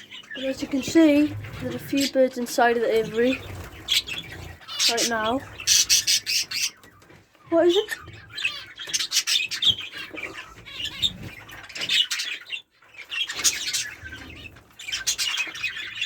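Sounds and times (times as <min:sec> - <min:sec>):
wings fluttering: 0:00.0 - 0:12.2
small birds chirping: 0:00.0 - 0:16.0.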